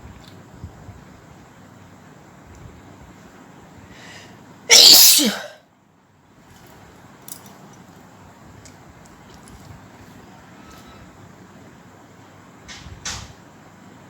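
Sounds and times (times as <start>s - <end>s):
short breath in: 3.9s - 4.4s
woman sneezing: 4.7s - 5.6s.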